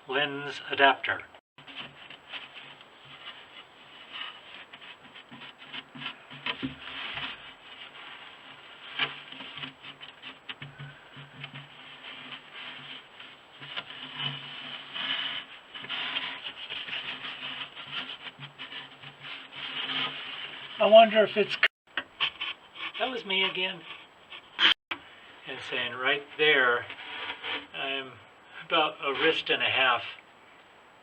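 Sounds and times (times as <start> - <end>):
handling rubbing and scraping: 1.6 - 30.6.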